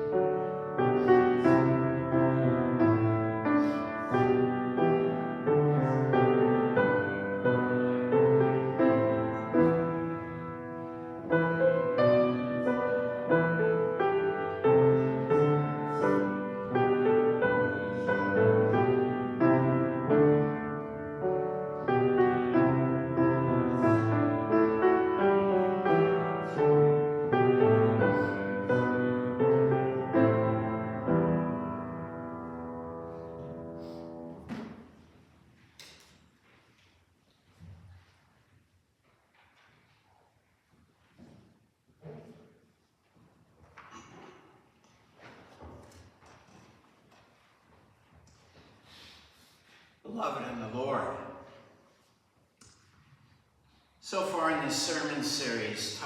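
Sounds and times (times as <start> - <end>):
piano playing slow chords: 0.0 - 34.8.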